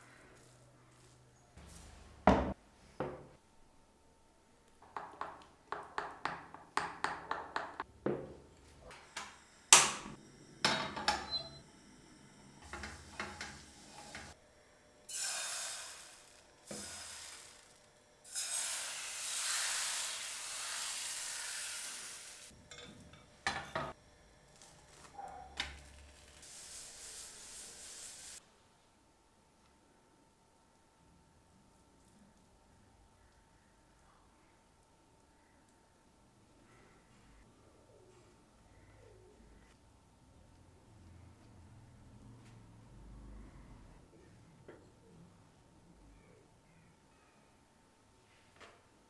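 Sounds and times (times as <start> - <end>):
sizzling: 8.5 - 14.4, 15.0 - 28.4
utensil clinking against pan: 22.7 - 23.9.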